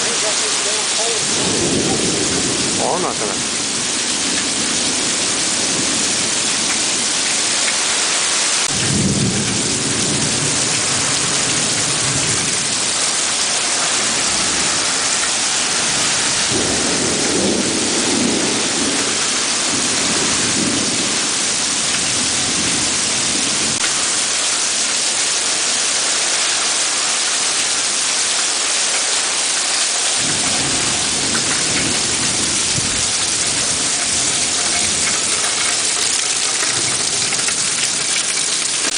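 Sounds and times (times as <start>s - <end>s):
heavy rain pouring: 0.0s - 38.9s
thunder rumbling: 1.2s - 7.7s, 8.6s - 23.8s, 30.2s - 38.9s.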